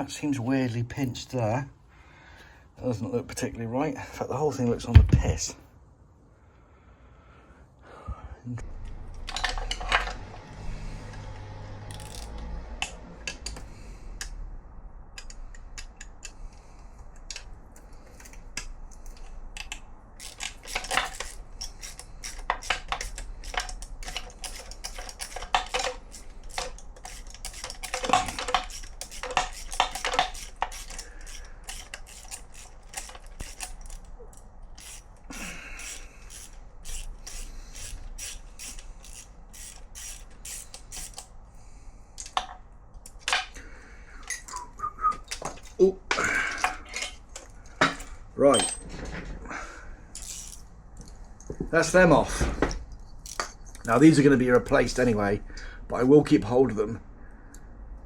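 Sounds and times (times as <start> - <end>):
metal tools clicking and clinking: 9.2 - 10.2, 11.9 - 13.6, 17.1 - 41.3, 45.3 - 49.2, 50.1 - 51.2, 52.9 - 55.1.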